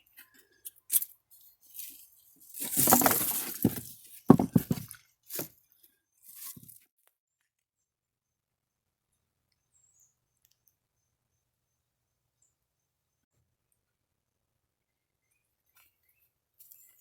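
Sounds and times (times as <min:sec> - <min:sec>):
rustling: 0:01.7 - 0:05.5, 0:06.3 - 0:06.8.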